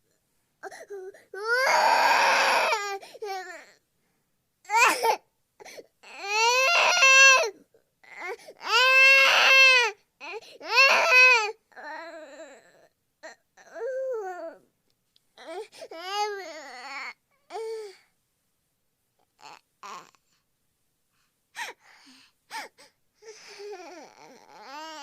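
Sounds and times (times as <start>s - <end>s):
baby-like wailing cries: 0.6s - 3.8s, 4.7s - 14.7s, 15.4s - 18.0s, 19.4s - 20.2s, 22.6s - 25.0s.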